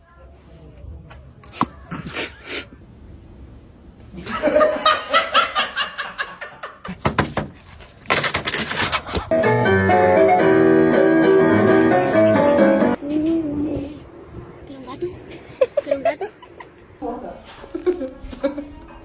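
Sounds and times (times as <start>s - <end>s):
people laughing: 4.1s - 6.9s, 15.3s - 17.0s.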